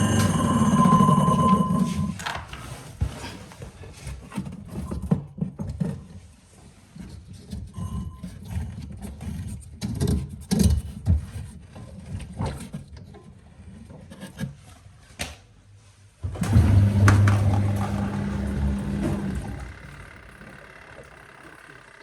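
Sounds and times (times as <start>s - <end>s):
motor humming: 0.0s - 2.1s, 16.4s - 22.0s.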